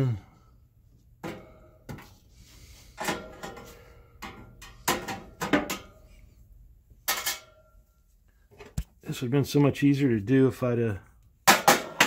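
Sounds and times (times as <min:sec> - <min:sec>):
metal parts and tools clattering: 0:07.0 - 0:07.7.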